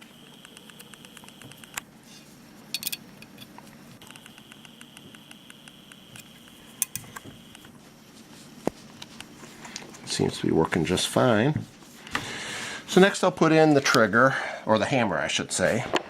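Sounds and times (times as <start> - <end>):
faint high whine: 0.0 - 11.7.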